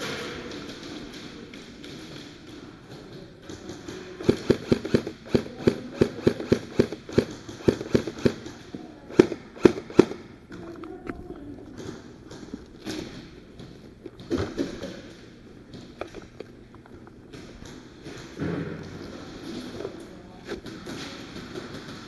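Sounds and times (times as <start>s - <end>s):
airsoft guns firing: 3.5s - 10.4s.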